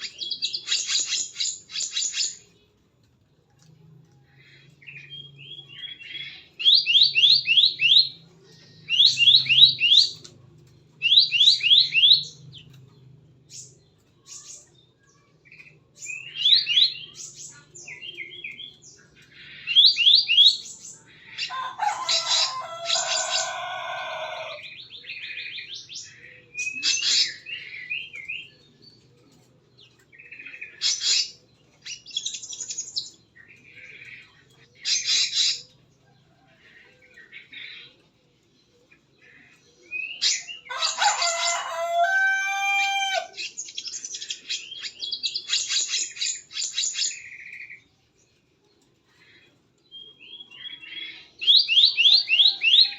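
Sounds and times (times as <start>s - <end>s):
bird chirps: 0.0s - 2.8s, 3.6s - 52.9s.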